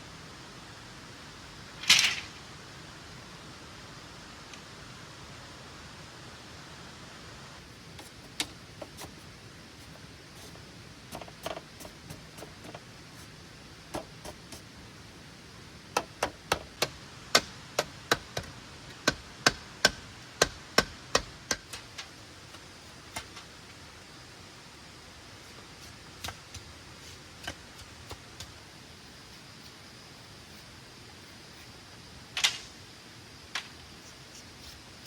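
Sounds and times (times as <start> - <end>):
hand tool striking bamboo: 16.0 - 22.2.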